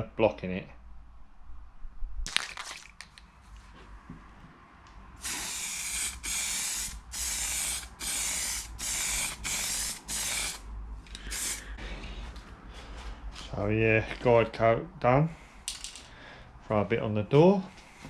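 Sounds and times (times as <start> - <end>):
aerosol can spraying: 5.2 - 10.6, 11.2 - 11.7.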